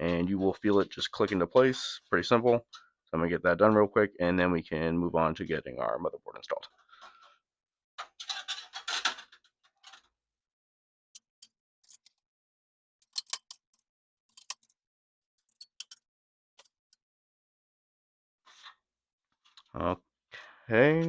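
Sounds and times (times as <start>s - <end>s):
metal snapping into place: 13.0s - 13.8s.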